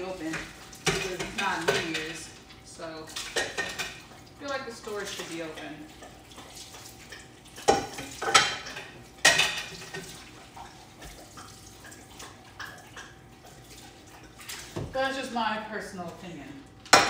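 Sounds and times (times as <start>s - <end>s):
pots and dishes clattering: 0.0s - 4.3s, 5.0s - 13.6s.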